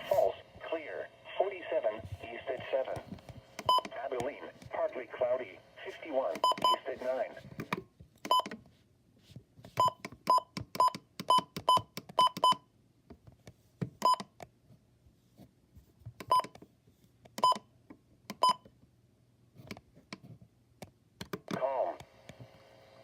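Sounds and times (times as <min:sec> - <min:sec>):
touch-tone beeps: 0:03.6 - 0:03.9, 0:06.4 - 0:06.8.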